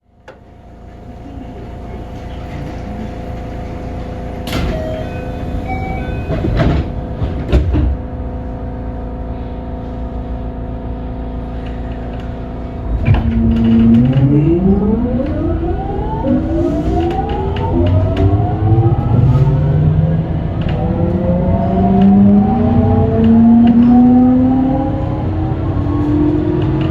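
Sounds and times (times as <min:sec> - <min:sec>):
electric train hum: 0:00.0 - 0:26.9
train motor whine rising in pitch: 0:13.1 - 0:26.8.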